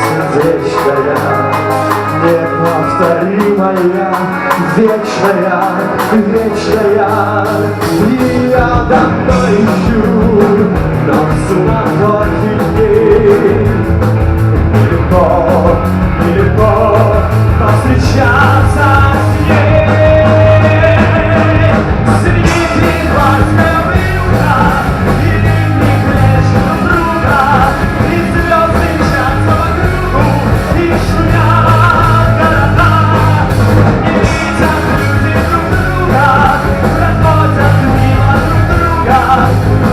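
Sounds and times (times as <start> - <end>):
instrumental rock music: 0.0 - 39.9.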